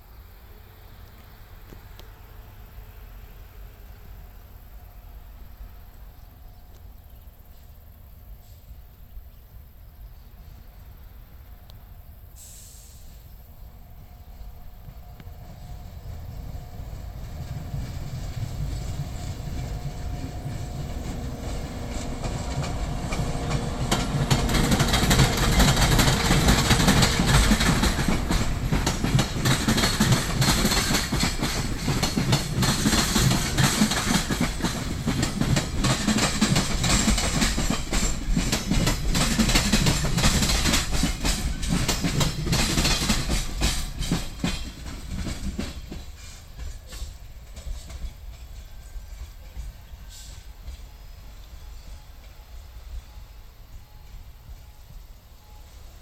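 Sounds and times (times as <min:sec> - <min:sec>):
freight train passing: 0:00.0 - 0:56.0
wheels clattering over rail joints: 0:15.5 - 0:49.8.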